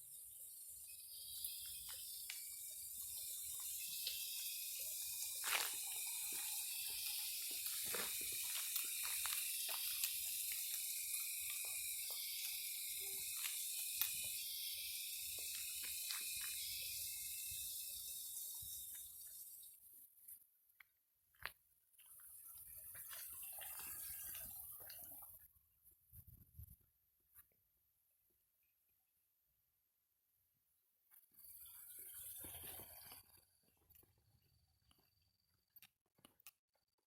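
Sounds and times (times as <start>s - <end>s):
high-pitched insect chorus: 0.0s - 20.0s, 31.3s - 33.4s
water drips and splashes: 0.5s - 20.0s, 22.0s - 25.4s.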